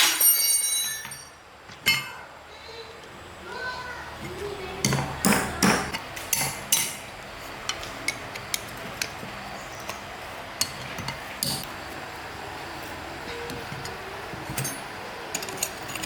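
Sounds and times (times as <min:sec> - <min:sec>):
metal tools knocking and clinking: 0:00.0 - 0:02.1, 0:10.6 - 0:11.7, 0:13.5 - 0:16.0.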